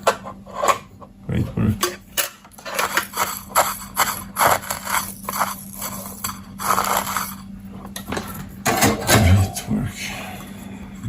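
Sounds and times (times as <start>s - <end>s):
faint steady hum: 0.0s - 11.0s
small parts scraping and clattering: 1.8s - 9.2s.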